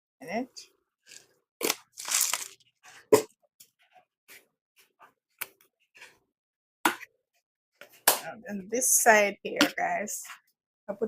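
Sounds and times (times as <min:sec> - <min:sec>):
brief rustle or crunch: 0:01.1 - 0:02.6.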